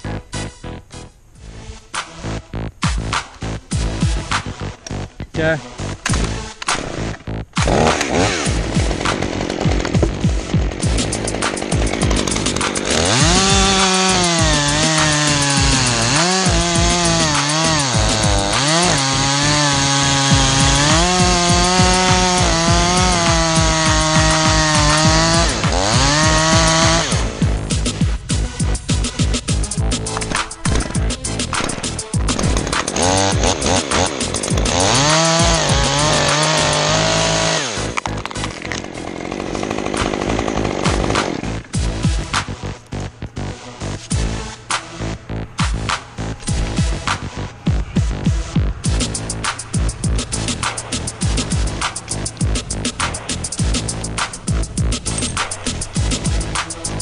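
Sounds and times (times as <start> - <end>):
chainsaw cutting wood: 1.9 - 5.1, 5.8 - 57.0
electronic beat music: 11.6 - 37.1, 43.2 - 57.0.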